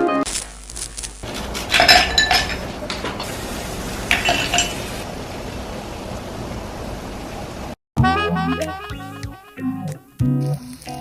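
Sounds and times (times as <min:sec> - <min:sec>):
tableware clinking: 0:01.3 - 0:03.3, 0:04.1 - 0:04.9.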